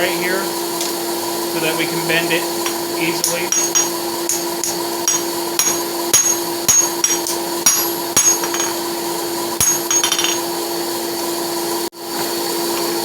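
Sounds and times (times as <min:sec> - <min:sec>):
steady hum: 0:00.0 - 0:10.5
hammer striking metal on anvil: 0:02.6 - 0:08.9, 0:09.6 - 0:10.5.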